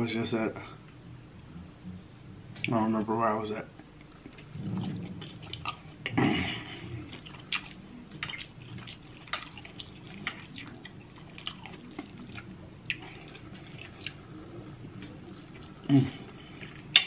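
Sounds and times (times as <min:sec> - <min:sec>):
chewing with wet smacks: 0:03.8 - 0:17.0.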